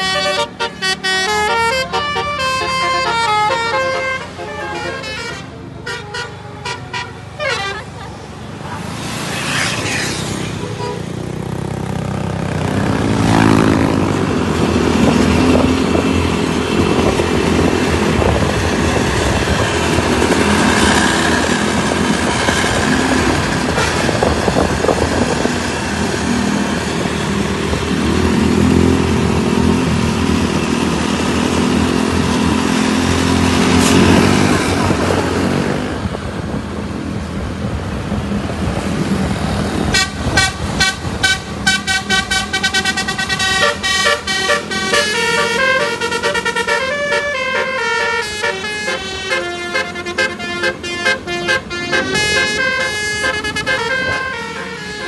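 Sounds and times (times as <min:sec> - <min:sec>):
multi-tone bus horn tune: 0:00.0 - 0:08.0, 0:10.5 - 0:11.3, 0:15.0 - 0:25.4, 0:39.9 - 0:55.0
heavy vehicle engine: 0:00.0 - 0:55.0
road noise: 0:00.0 - 0:55.0.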